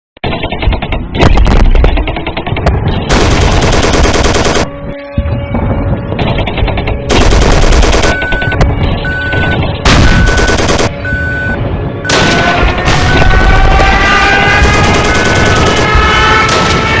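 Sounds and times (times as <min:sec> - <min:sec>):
machine-gun fire: 0:03.1 - 0:04.7, 0:07.1 - 0:08.3, 0:09.9 - 0:10.9, 0:12.1 - 0:17.0.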